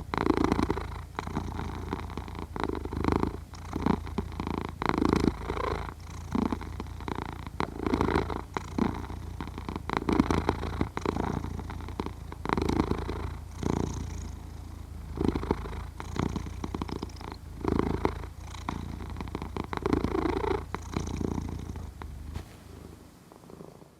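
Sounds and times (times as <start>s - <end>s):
cat purring: 0.0s - 23.9s.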